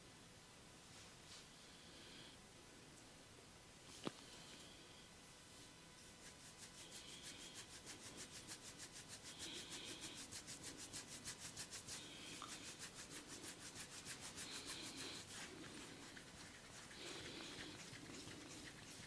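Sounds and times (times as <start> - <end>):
hands rubbing a head: 6.0 - 19.0.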